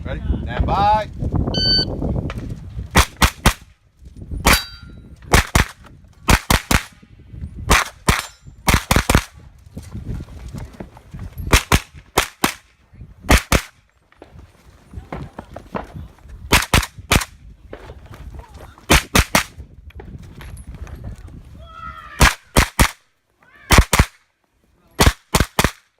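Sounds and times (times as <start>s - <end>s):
steel target ringing: 4.5s - 5.0s
carbine gunshots: 7.7s - 9.4s, 25.0s - 25.9s.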